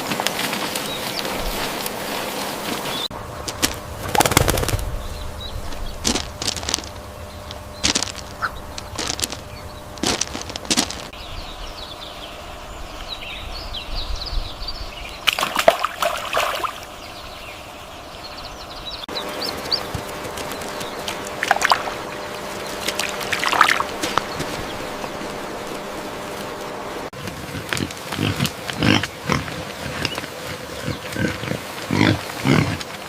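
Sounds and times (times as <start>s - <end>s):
water splashing and sloshing: 15.2s - 17.0s, 21.0s - 27.4s.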